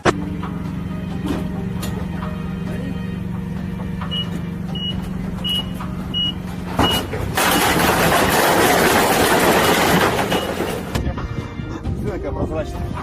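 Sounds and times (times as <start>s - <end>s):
heavy vehicle engine running: 0.0s - 12.0s
reversing alarm beeps: 4.1s - 7.1s, 9.6s - 10.8s.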